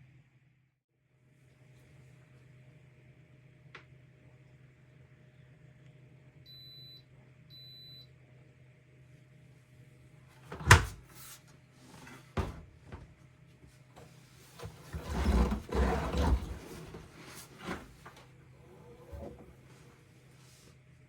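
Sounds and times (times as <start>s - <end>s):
washing machine door click: 10.5s - 11.0s.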